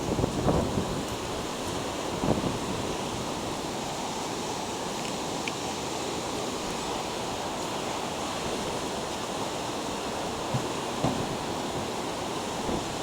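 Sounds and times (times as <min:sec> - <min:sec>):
ocean surf breaking: 0:06.1 - 0:13.0.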